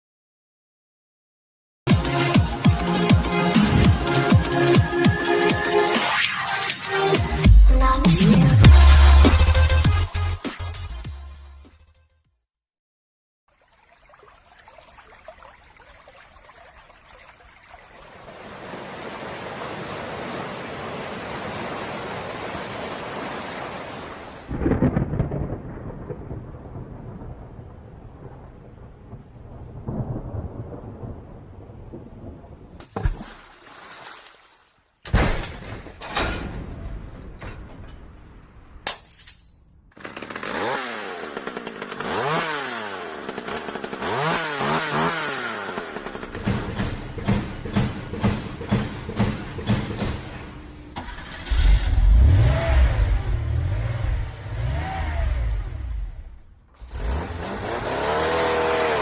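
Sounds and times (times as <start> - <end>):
thunderclap rumbling: 24.5 - 32.8, 36.3 - 38.8
sharp cracks and impacts: 35.0 - 52.1
small engine revving: 40.0 - 47.0, 51.0 - 59.0.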